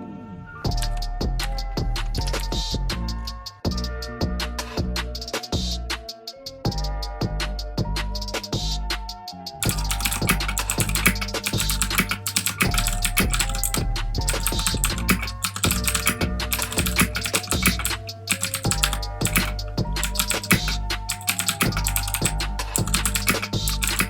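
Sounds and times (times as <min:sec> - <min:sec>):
background music: 0:00.0 - 0:24.0
typing on clicky mechanical keyboard: 0:09.6 - 0:24.0.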